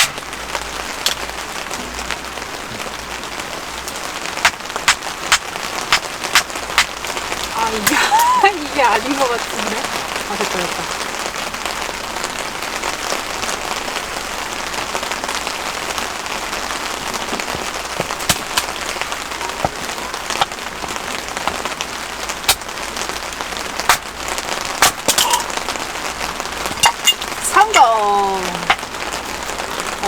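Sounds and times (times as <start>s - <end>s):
firewood being split: 0.0s - 1.4s, 4.4s - 9.8s, 15.8s - 30.0s
steady rain falling: 0.0s - 30.0s.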